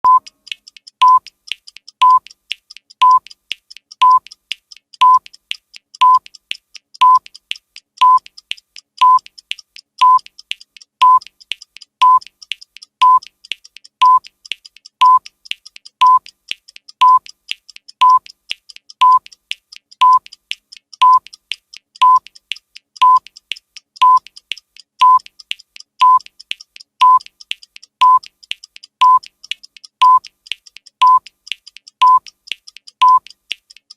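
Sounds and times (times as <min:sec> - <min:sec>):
electronic timer beeps: 0:00.0 - 0:02.3, 0:03.0 - 0:03.3, 0:04.0 - 0:04.4, 0:05.0 - 0:05.3, 0:06.0 - 0:06.3, 0:07.0 - 0:07.3, 0:08.0 - 0:08.4, 0:09.0 - 0:09.4, 0:10.0 - 0:10.4, 0:11.0 - 0:11.4, 0:12.0 - 0:13.4, 0:14.0 - 0:14.3, 0:15.0 - 0:15.3, 0:16.0 - 0:16.3, 0:17.0 - 0:17.3, 0:18.0 - 0:18.3, 0:19.0 - 0:19.3, 0:20.0 - 0:20.3, 0:21.0 - 0:21.4, 0:22.0 - 0:22.4, 0:23.0 - 0:23.4, 0:24.0 - 0:24.4, 0:25.0 - 0:25.4, 0:26.0 - 0:26.4, 0:27.0 - 0:27.4, 0:28.0 - 0:31.3, 0:31.9 - 0:33.4
faint sharp clicks: 0:00.1 - 0:33.9.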